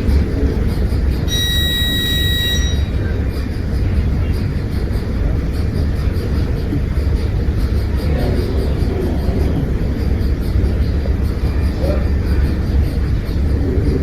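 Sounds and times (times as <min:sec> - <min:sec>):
high electronic tone: 0:01.3 - 0:03.1.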